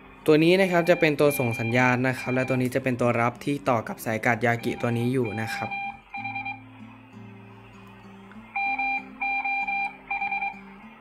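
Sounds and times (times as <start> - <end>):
quiet background music: 0.0 - 11.0
high beep tone on radio: 0.7 - 2.7, 4.5 - 6.6, 8.6 - 10.6.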